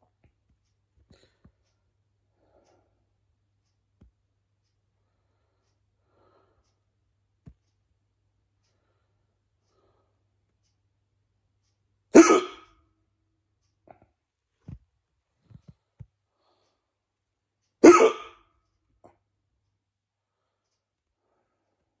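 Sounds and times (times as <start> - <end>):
person hiccuping: 12.1 - 12.7, 17.8 - 18.4.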